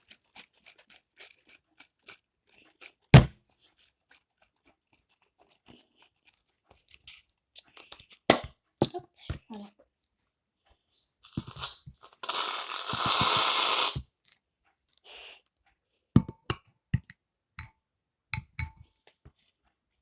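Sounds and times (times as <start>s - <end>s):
aerosol can spraying: 11.3s - 14.0s
containers clicking and tapping: 11.3s - 14.0s.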